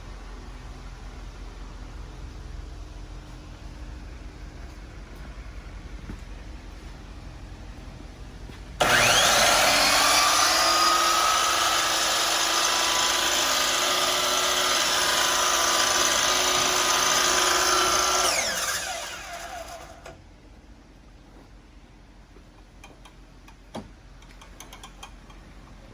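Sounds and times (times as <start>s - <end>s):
miter saw running high whine: 8.8s - 20.2s.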